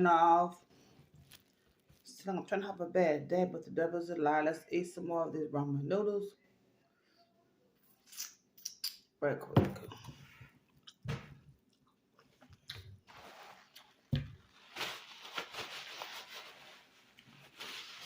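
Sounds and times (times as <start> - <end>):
person chewing noodles: 11.6 - 13.1.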